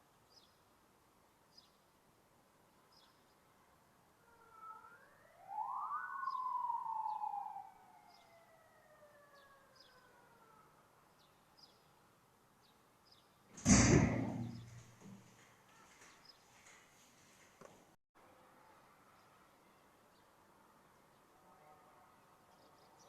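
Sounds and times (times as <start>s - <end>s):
siren wailing: 4.3s - 10.8s
loud thump: 13.5s - 15.2s.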